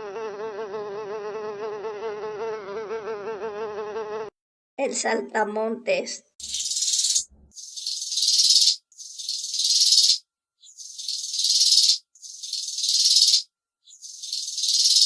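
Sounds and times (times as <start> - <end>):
grasshopper stridulating: 6.4 - 15.0.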